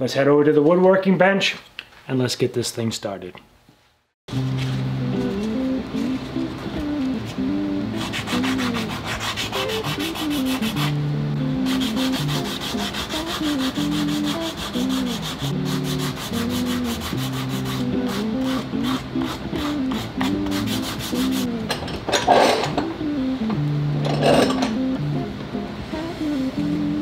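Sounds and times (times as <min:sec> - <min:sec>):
background music: 0:04.3 - 0:27.0
sanding wood by hand: 0:08.0 - 0:11.0, 0:11.6 - 0:21.5.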